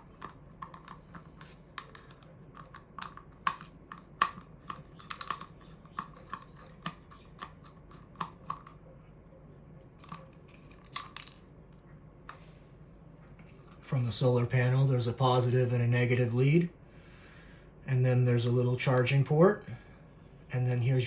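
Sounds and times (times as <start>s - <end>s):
plastic housing clicks and taps: 0.2s - 8.8s.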